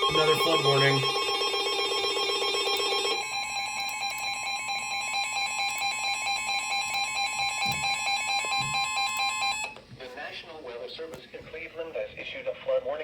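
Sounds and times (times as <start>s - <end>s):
two-tone alarm: 0.0s - 9.8s.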